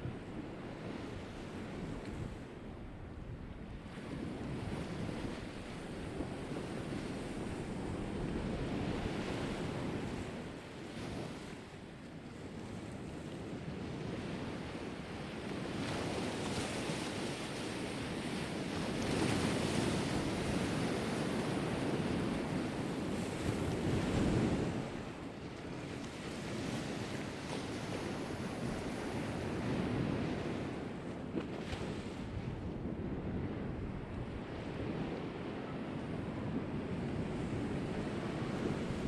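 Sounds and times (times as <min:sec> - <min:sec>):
sea waves breaking on shore: 0:00.0 - 0:39.0
wind blowing: 0:18.8 - 0:39.0.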